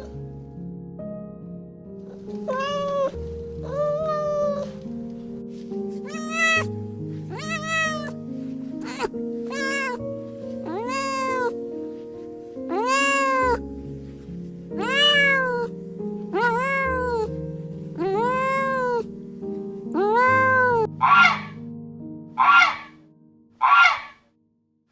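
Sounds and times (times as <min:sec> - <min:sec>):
background music: 0:00.0 - 0:23.3
cat meowing: 0:02.2 - 0:04.8, 0:05.9 - 0:11.7, 0:12.7 - 0:13.6, 0:14.8 - 0:17.4, 0:18.0 - 0:19.1, 0:19.9 - 0:21.6, 0:22.4 - 0:23.0, 0:23.6 - 0:24.2
harsh animal calls: 0:06.0 - 0:06.7, 0:07.3 - 0:08.1, 0:08.8 - 0:10.0, 0:10.7 - 0:11.6, 0:12.7 - 0:13.6, 0:14.8 - 0:15.7, 0:20.0 - 0:21.6, 0:22.4 - 0:23.0, 0:23.6 - 0:24.2.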